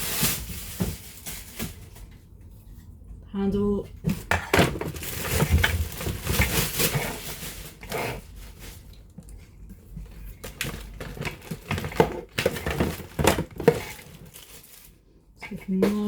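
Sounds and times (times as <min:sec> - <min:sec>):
plastic rustling and crinkling: 0:00.0 - 0:03.0, 0:03.9 - 0:15.2
plastic parts clicking and knocking: 0:10.4 - 0:14.3.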